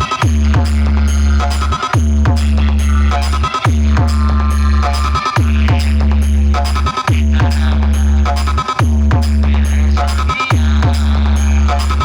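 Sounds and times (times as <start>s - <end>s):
electronic dance music with heavy bass: 0.0s - 12.0s.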